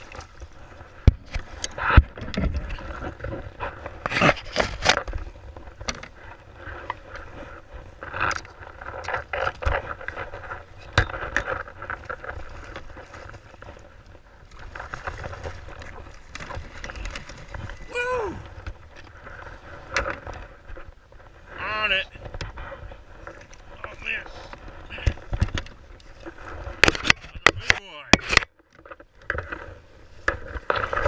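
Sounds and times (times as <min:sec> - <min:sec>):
knocks and scrapes against kayak: 0:00.0 - 0:31.0.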